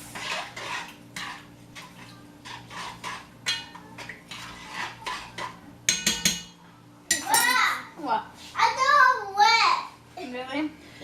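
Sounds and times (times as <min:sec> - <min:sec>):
utensil scraping cookware: 0:00.0 - 0:07.6.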